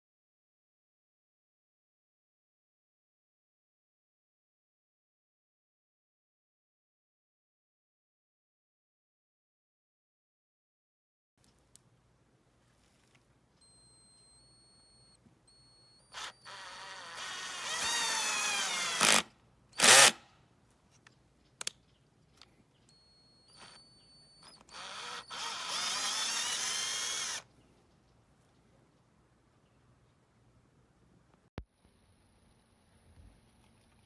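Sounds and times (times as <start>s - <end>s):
drill clicks: 15.6s - 20.2s, 23.4s - 27.5s
drill motor running: 16.1s - 20.2s, 23.5s - 27.4s.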